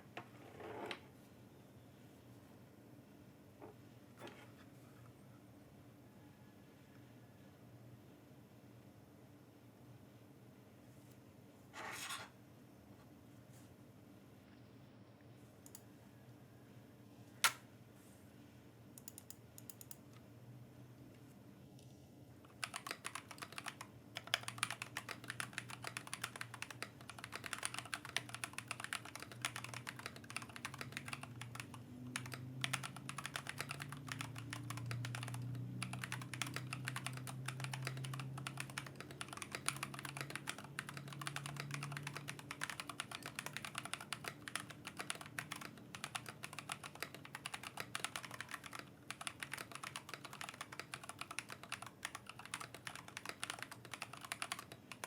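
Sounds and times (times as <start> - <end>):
fast typing on mechanical keyboard: 22.5 - 55.0.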